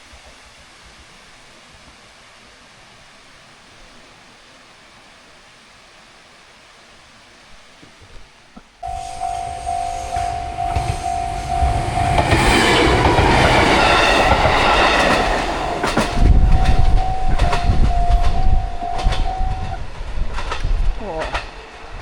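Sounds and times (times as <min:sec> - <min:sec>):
level crossing alarm dinging: 0:08.8 - 0:20.0
train passing with rumble: 0:08.8 - 0:22.0
wheels clattering over rail joints: 0:09.6 - 0:22.0.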